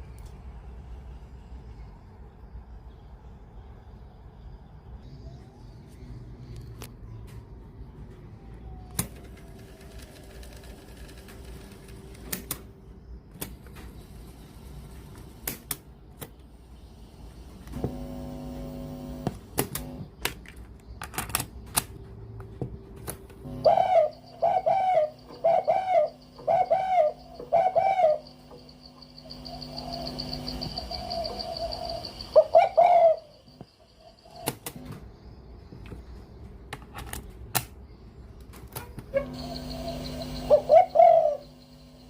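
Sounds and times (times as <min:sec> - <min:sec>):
steady hum: 0:10.7 - 0:20.3, 0:21.9 - 0:35.0, 0:39.1 - 0:42.0
bird calling: 0:23.4 - 0:34.6, 0:39.1 - 0:42.0.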